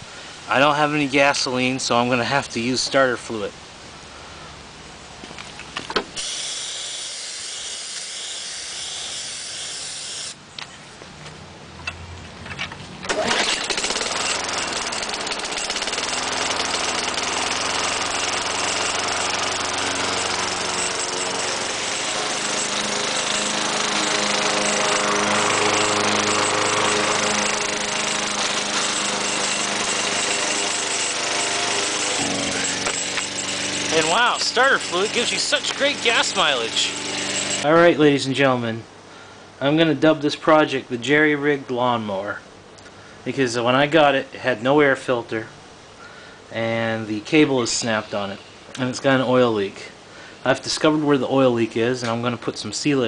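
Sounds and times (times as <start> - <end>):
spray can hissing: 6.2 - 10.4
lawn mower engine running: 13.0 - 37.7.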